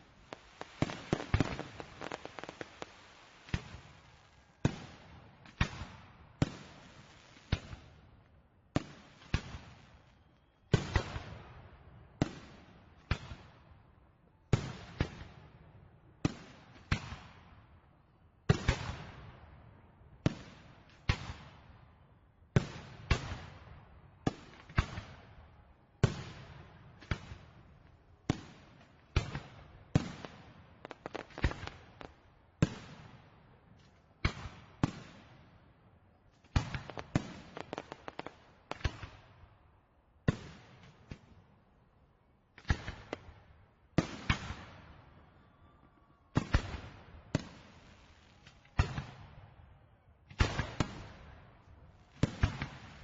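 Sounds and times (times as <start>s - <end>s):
fireworks exploding: 0.0s - 8.0s, 28.3s - 33.5s, 36.4s - 39.4s, 52.1s - 53.0s.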